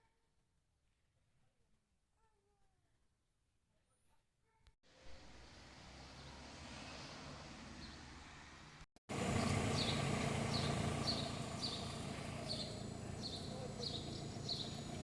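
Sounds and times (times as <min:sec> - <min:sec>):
low hum: 0:09.1 - 0:15.0
high falling chirp: 0:09.3 - 0:15.0.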